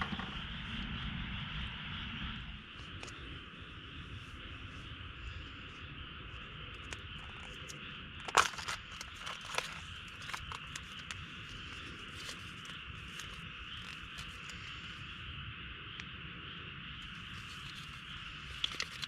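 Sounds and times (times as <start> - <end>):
crickets chirring: 0.0 - 19.0
crunching crinkling handling: 6.8 - 14.7, 17.0 - 19.0.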